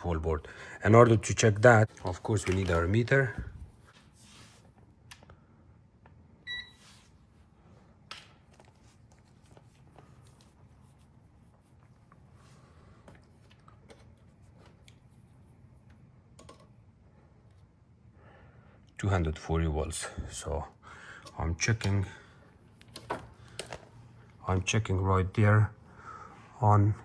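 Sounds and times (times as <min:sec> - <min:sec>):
multimeter high beep: 0:06.4 - 0:06.8.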